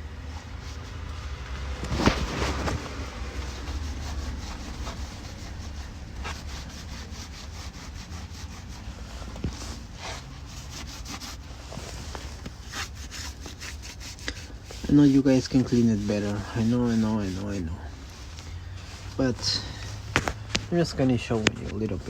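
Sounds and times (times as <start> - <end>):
steady low hum: 0.0 - 22.0
scraping on metal surface: 1.9 - 17.7.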